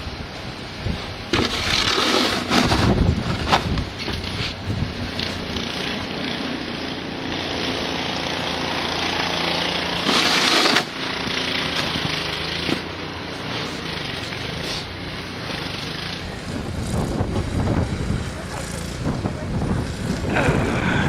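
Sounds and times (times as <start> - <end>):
snowblower engine running: 0.0 - 21.0
rushing noise: 14.5 - 21.0.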